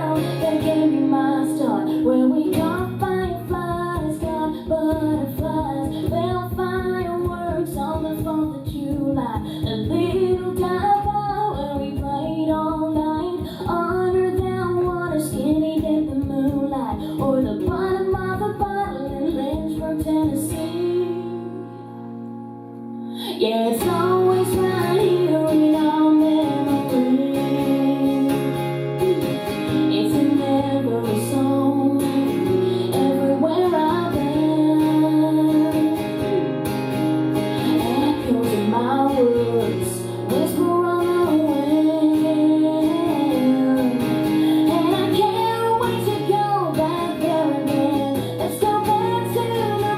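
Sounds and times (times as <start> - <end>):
woman singing: 0.0 - 22.3, 23.1 - 49.9
acoustic guitar: 0.0 - 49.9.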